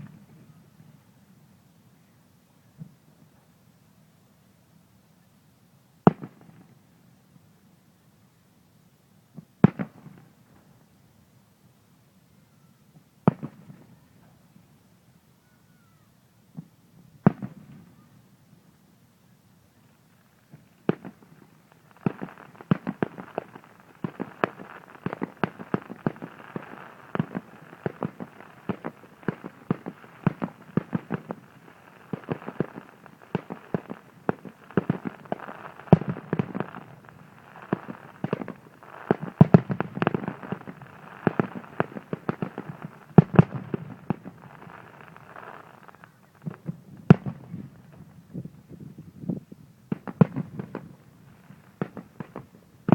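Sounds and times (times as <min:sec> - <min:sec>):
fireworks crackle: 0:00.0 - 0:01.2, 0:19.6 - 0:52.9
fireworks bangs: 0:13.2 - 0:14.1, 0:16.6 - 0:18.1, 0:20.2 - 0:52.9.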